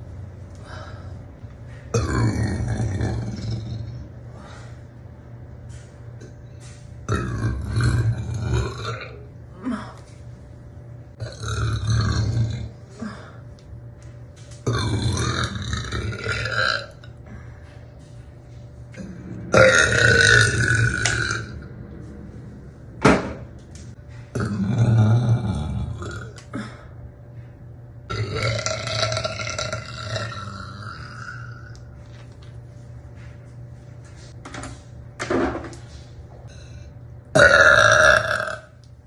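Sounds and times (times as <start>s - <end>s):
woman burping: 19.6s - 21.6s, 37.4s - 38.7s.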